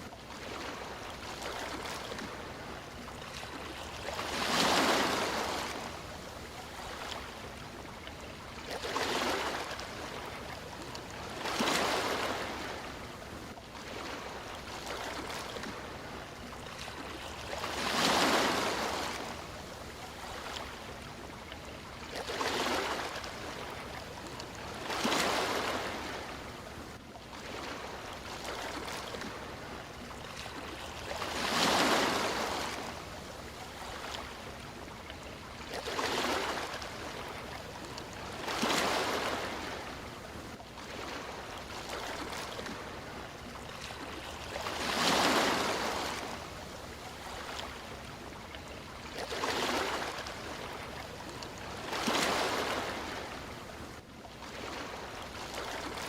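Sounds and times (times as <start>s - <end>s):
sea waves surging: 0.0s - 7.6s, 8.6s - 21.2s, 22.1s - 24.0s, 24.7s - 26.8s, 30.4s - 34.6s, 35.6s - 43.2s, 43.8s - 47.9s, 49.0s - 51.1s, 51.7s - 53.6s.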